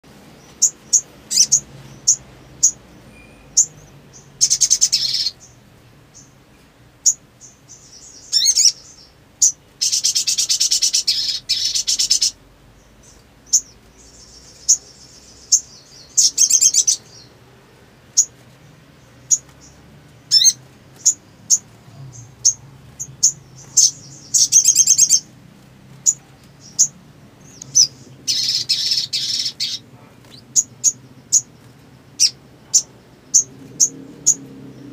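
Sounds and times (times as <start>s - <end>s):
songbird high chirps: 0.2s - 17.5s, 18.1s - 34.9s
bird trilled chattering: 0.6s - 5.6s, 7.0s - 12.4s, 13.0s - 17.3s, 19.3s - 25.3s, 26.0s - 31.5s.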